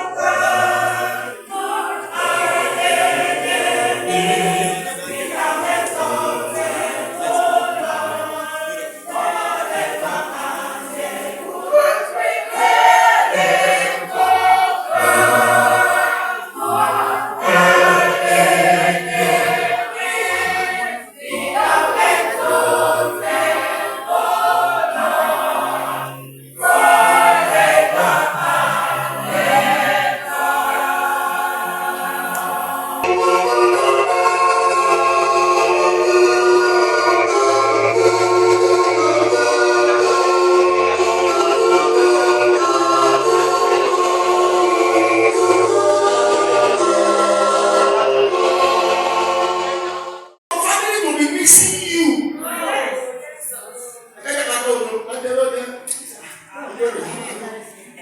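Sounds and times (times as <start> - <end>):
music accompaniment: 0.0 - 50.1
church choir singing gospel: 0.0 - 58.0.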